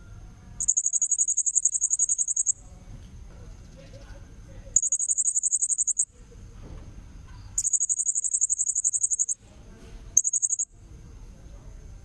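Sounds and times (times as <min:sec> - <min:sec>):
high-pitched pulsed bird trill: 0:00.6 - 0:02.6, 0:04.8 - 0:06.1, 0:07.6 - 0:09.4, 0:10.2 - 0:10.7.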